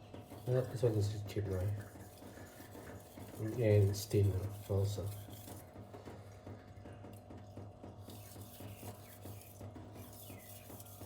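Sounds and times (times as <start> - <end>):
knife scraping on whetstone: 0.4 - 5.6, 8.0 - 11.0.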